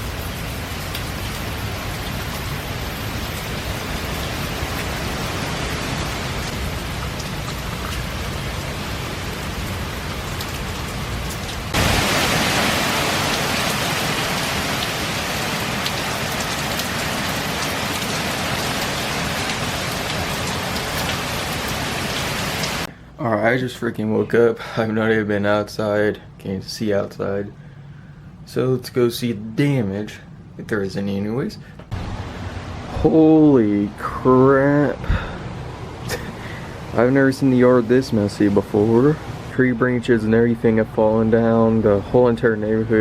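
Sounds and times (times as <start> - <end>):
heavy rain pouring: 0.0 - 22.9, 31.7 - 42.8.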